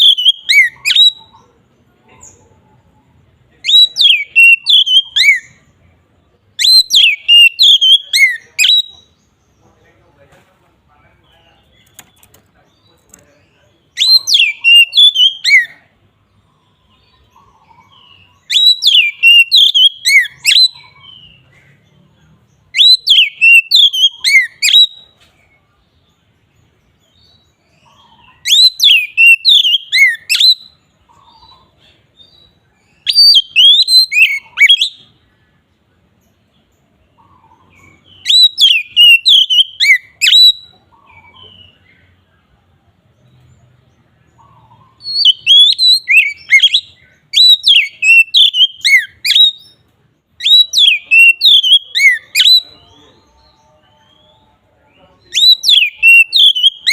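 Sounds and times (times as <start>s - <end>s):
bird singing whistled notes: 0.0s - 1.5s, 3.5s - 9.6s, 11.3s - 25.2s, 25.9s - 42.4s, 43.2s - 56.9s.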